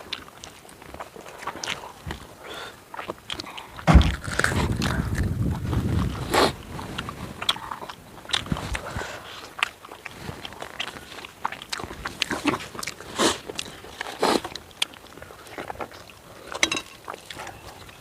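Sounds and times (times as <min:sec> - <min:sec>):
person chewing and biting: 0:00.0 - 0:18.0
wet mouth clicks and smacks: 0:02.9 - 0:16.2.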